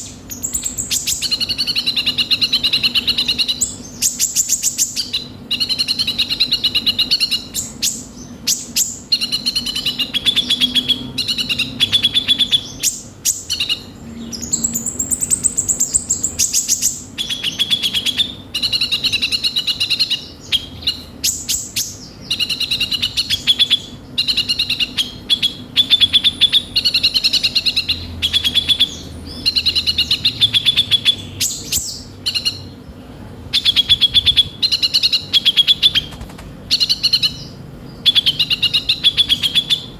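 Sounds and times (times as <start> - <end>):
sunbird chattering song: 0.0 - 39.9
fast high clicking trills: 35.7 - 37.4.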